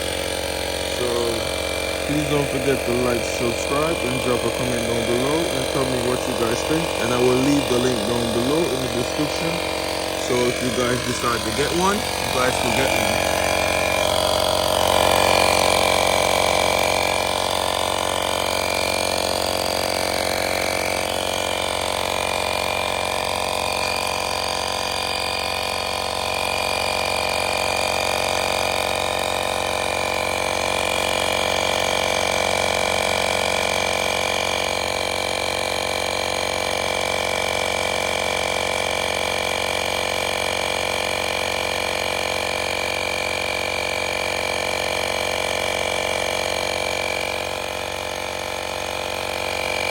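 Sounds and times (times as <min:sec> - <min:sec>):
tire inflator motor whine: 0:00.0 - 0:49.9.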